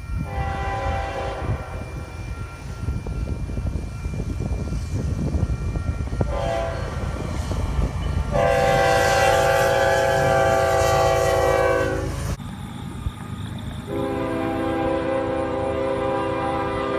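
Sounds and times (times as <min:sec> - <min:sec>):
low train noise: 0:00.0 - 0:16.9
locomotive air horn chord: 0:00.3 - 0:02.1, 0:06.2 - 0:12.4, 0:13.9 - 0:16.9.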